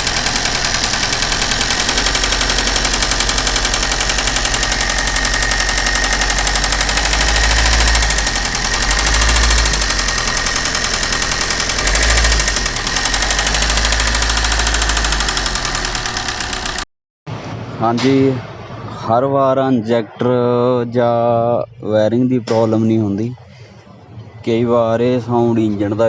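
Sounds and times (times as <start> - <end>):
car engine knocking: 0.0 - 16.8.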